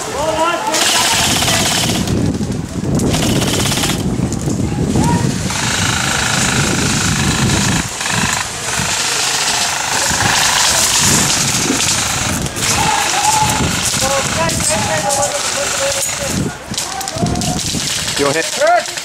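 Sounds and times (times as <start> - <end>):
loud steady rushing noise: 0.0 - 19.0
airsoft guns firing full-auto: 0.7 - 2.2, 3.1 - 4.1, 5.5 - 16.2, 17.6 - 19.0.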